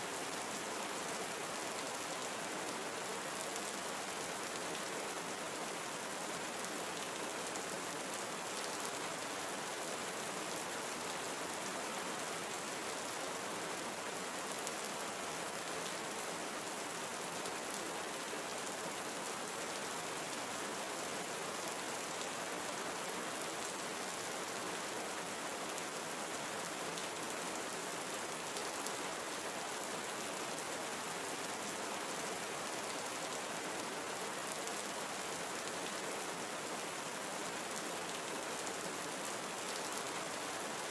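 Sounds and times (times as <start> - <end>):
rain patter on leaves: 0.1 - 40.9.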